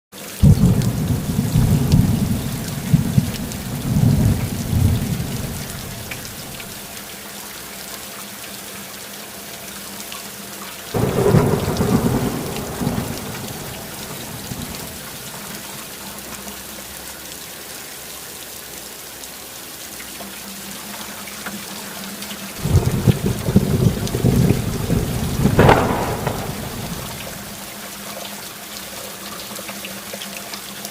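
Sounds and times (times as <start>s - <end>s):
steady rain: 0.2s - 30.9s
thunder rolling: 0.4s - 6.7s, 11.0s - 15.5s, 22.6s - 27.6s.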